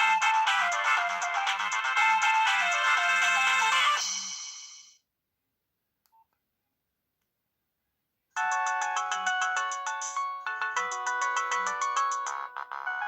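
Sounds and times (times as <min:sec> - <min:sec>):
polyphonic phone ringtone: 0:08.4 - 0:13.0.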